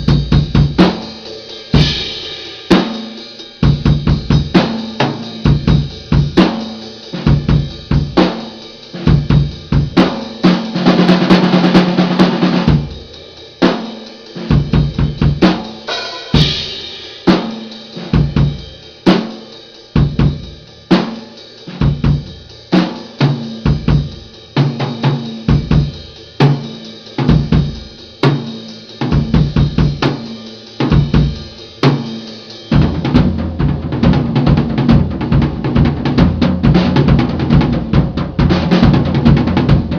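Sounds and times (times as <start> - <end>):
drum kit playing: 0.0 - 39.9
cymbal crash: 15.7 - 17.5.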